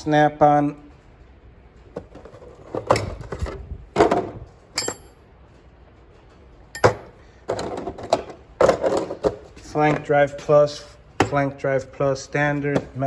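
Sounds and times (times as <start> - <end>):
metal wrenches clinking: 4.8 - 5.3, 6.8 - 10.6.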